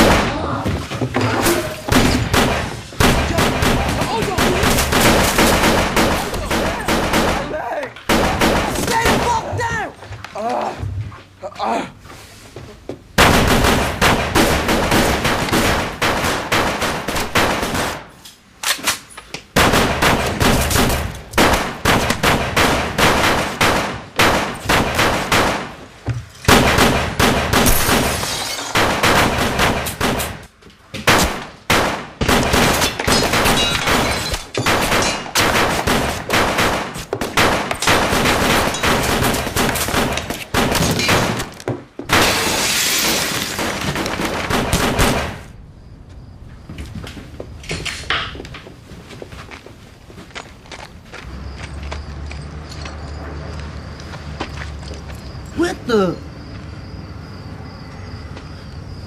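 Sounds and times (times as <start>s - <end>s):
heavy gunfire volleys: 0.0s - 0.5s, 1.6s - 9.5s, 13.2s - 18.2s, 19.6s - 25.9s, 26.5s - 42.5s, 43.4s - 45.6s.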